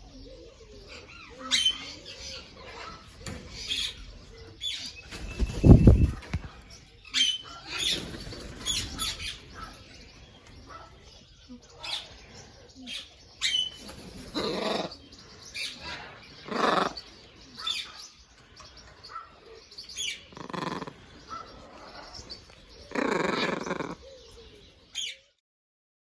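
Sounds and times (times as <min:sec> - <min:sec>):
parrots squawking: 0:13.4 - 0:15.0, 0:15.6 - 0:18.0, 0:20.0 - 0:24.0.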